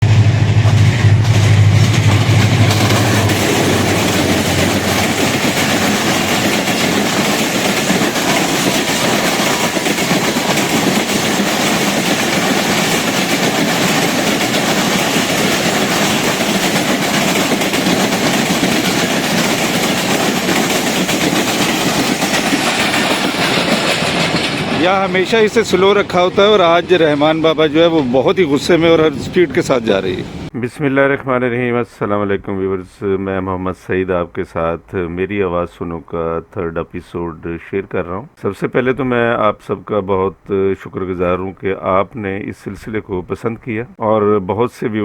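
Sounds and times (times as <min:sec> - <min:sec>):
low hum: 0:00.0 - 0:08.3
train rattling over rail joints: 0:00.0 - 0:30.6.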